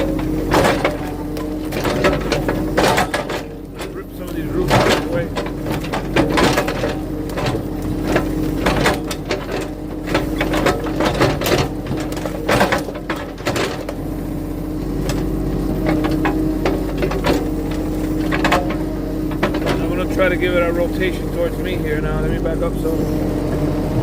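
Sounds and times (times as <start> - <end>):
bucket knocks and clanks: 0.0 - 14.0, 15.8 - 20.4
digging machine engine running: 0.0 - 24.0.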